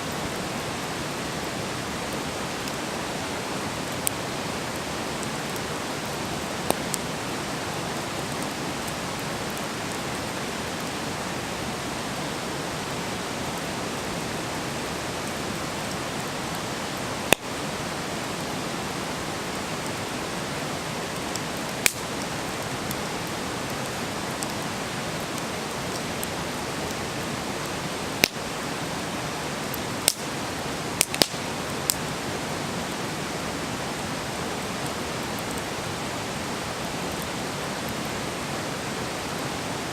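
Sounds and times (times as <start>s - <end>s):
wood crackling and popping: 3.7s - 11.0s, 15.3s - 17.5s, 21.1s - 28.6s, 29.6s - 32.1s
flames hissing: 21.1s - 32.1s.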